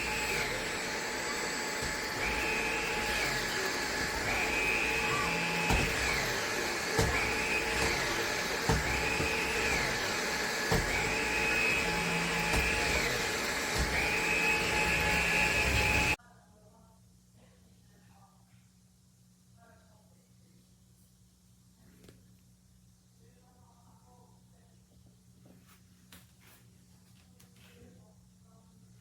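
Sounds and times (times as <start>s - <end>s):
stick vacuum motor whine: 0.0s - 16.2s.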